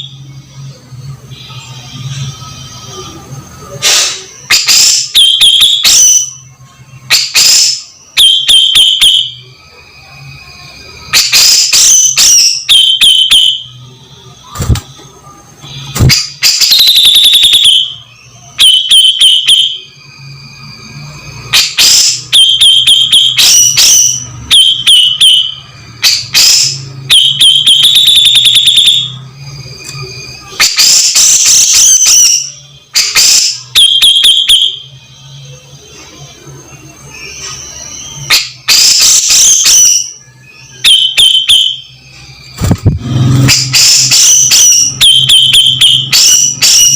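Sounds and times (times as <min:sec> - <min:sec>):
bird calling harsh clicks and whistle: 0:03.8 - 0:06.3, 0:11.1 - 0:13.4, 0:21.5 - 0:22.3, 0:30.6 - 0:33.7.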